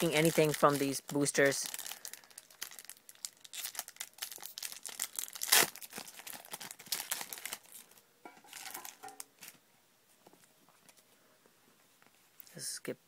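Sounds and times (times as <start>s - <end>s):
foil wrapper ripping: 0.0s - 9.5s
foil wrapper crinkling: 0.0s - 9.6s.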